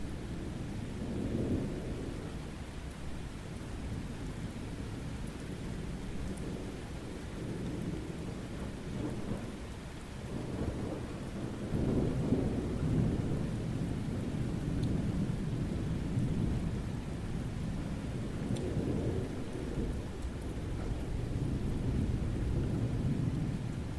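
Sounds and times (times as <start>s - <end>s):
steady rain: 0.0s - 23.9s
thunder rumbling: 7.4s - 23.9s.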